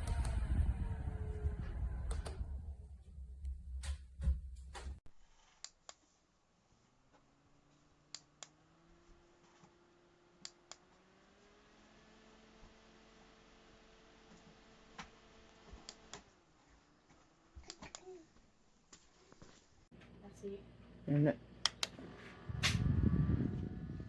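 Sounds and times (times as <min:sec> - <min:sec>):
small fan motor humming: 0:00.0 - 0:03.0, 0:21.5 - 0:24.0.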